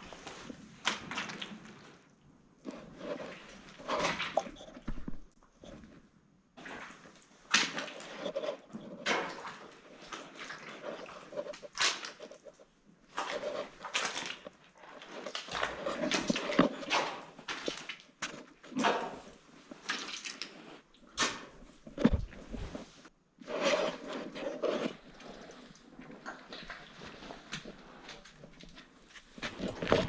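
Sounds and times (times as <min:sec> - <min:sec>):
boots squelching through sludge: 0:06.6 - 0:30.0.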